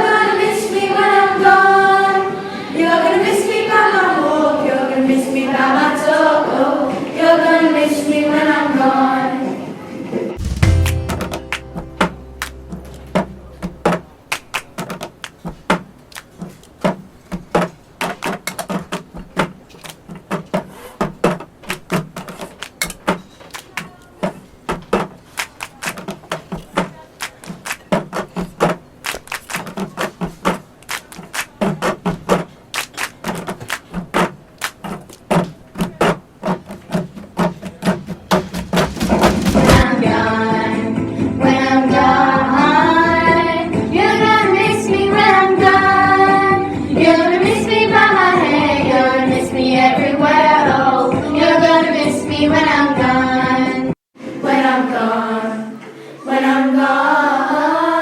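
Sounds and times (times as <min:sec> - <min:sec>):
quiet backing music: 0:00.0 - 0:14.3, 0:39.2 - 0:56.9
cups clapped and tapped on tables: 0:13.2 - 0:39.0.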